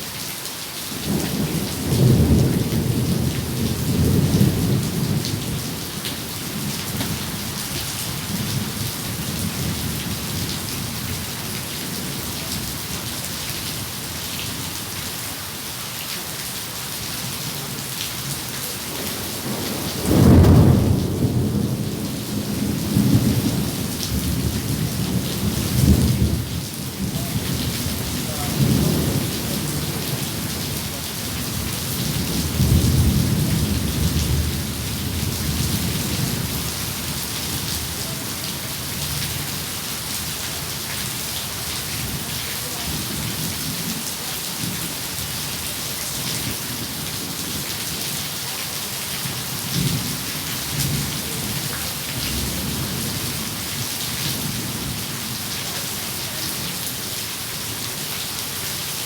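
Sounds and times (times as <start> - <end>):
steady rain: 0.0 - 59.0
rolling thunder: 1.0 - 12.8, 18.9 - 38.3.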